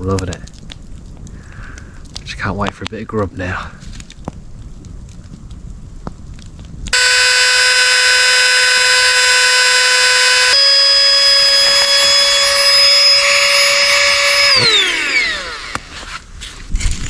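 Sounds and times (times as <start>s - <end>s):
electric air pump whining: 7.0s - 16.8s.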